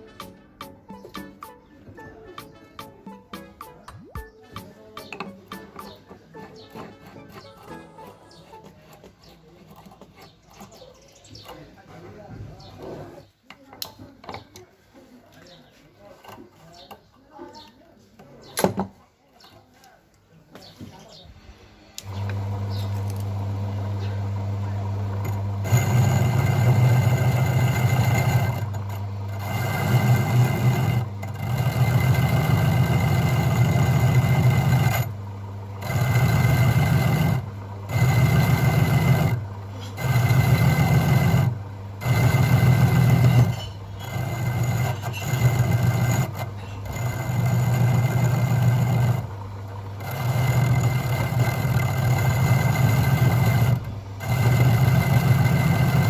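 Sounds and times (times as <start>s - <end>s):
grinder motor humming: 0.0s - 14.5s, 22.0s - 56.0s
metal grinding rasp: 4.5s - 11.9s, 15.5s - 17.6s, 25.2s - 56.0s.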